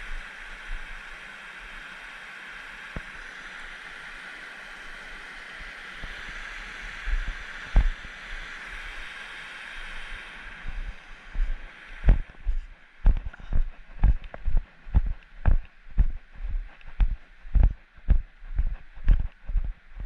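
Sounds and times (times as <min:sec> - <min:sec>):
footsteps on a trail: 0:07.1 - 0:08.1, 0:10.6 - 0:20.0.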